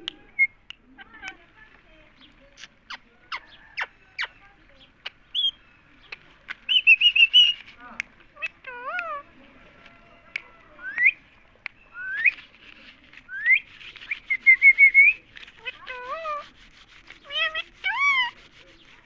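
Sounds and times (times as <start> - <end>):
parrot chirping: 2.6 - 5.6, 6.7 - 7.7, 8.4 - 9.3, 10.8 - 11.2, 11.8 - 12.4, 13.3 - 18.6
parrot whistling: 11.9 - 12.4.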